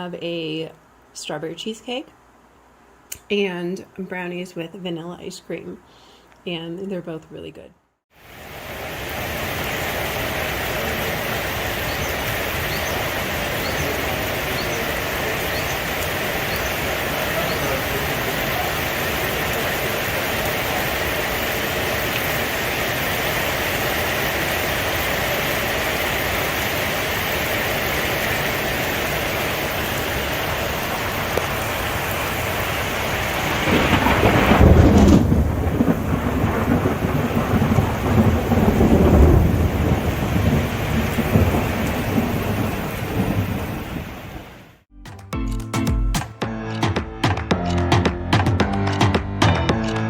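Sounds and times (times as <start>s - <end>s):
heavy rain: 8.1s - 44.8s
low roll of thunder: 33.2s - 44.5s.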